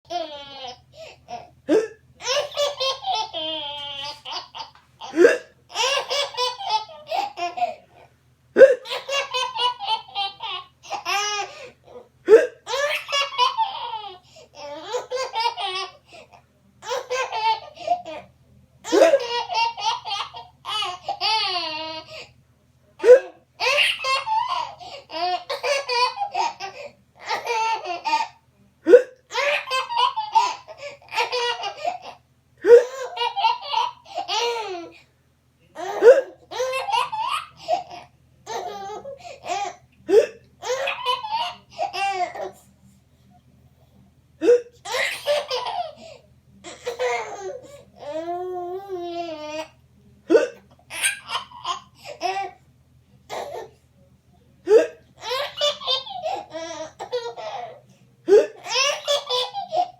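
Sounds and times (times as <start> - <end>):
baby giggling: 0.1 - 7.8, 8.6 - 11.5, 12.3 - 16.0, 18.9 - 22.2, 23.0 - 28.3, 35.8 - 42.5
baby hiccuping: 5.2 - 5.5.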